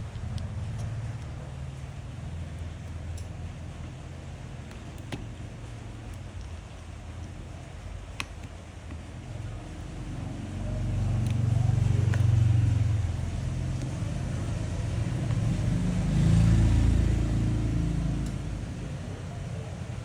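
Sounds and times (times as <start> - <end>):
passing vehicle engines: 9.5 - 20.0.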